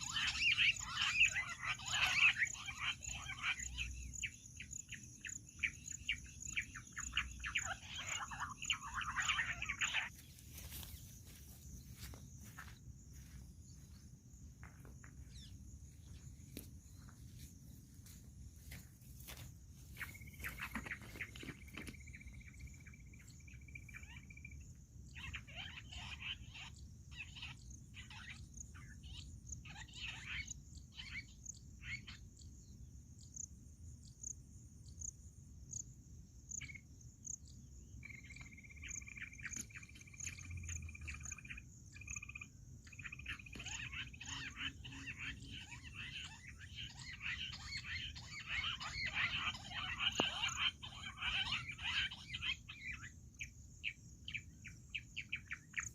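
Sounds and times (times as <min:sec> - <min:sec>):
wild birds calling: 0:00.0 - 0:32.7, 0:36.5 - 0:55.9
high insect drone: 0:08.4 - 0:24.9.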